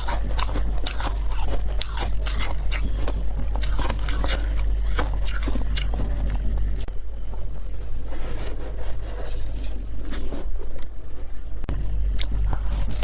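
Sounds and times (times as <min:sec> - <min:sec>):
spoon crunching through frost: 0:00.0 - 0:06.9
steady low hum: 0:00.0 - 0:13.0.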